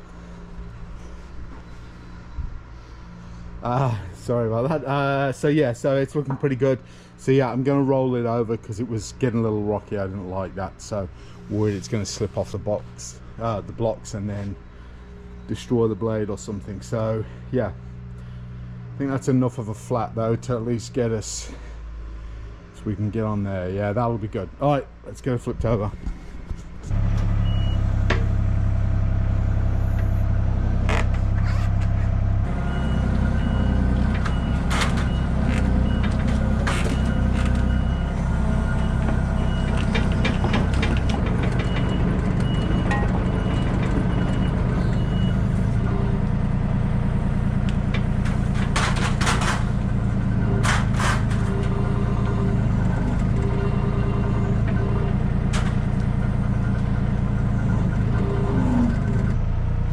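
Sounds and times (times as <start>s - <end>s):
diesel engine running: 0.0s - 59.9s
backup alarm beeping: 27.4s - 27.8s, 32.6s - 40.8s, 41.4s - 46.2s.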